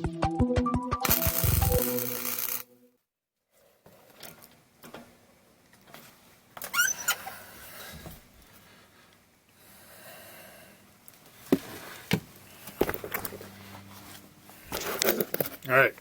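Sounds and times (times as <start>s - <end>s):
background music: 0.0s - 3.0s.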